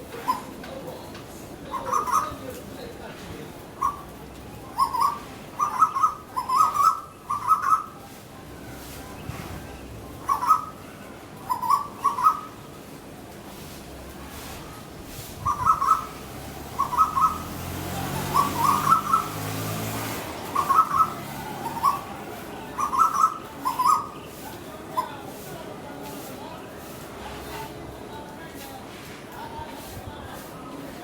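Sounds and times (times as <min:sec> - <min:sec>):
bird harsh clipped calls: 0:01.7 - 0:02.5, 0:03.7 - 0:08.0, 0:10.2 - 0:12.7, 0:15.4 - 0:25.2.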